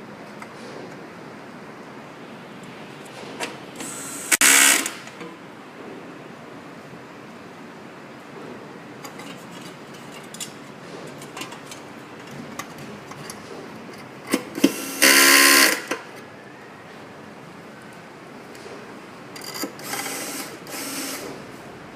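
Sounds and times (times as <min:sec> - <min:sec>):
short loud motor buzz: 0:03.8 - 0:05.1, 0:14.7 - 0:15.9.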